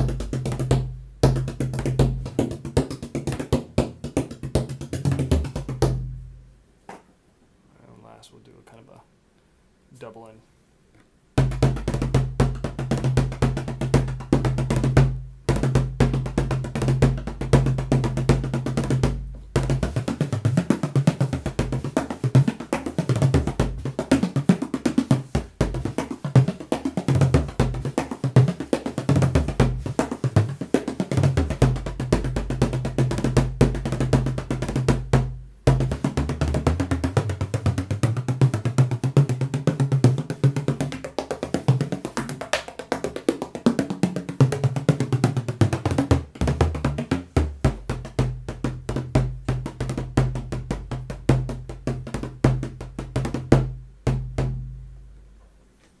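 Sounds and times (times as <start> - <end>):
frame drum played with a tipper: 11.4 - 54.6.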